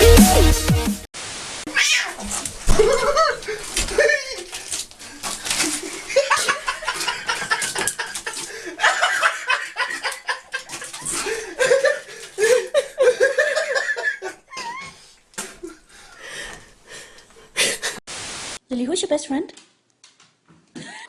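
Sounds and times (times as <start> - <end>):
people laughing: 2.7 - 4.5, 5.8 - 14.8.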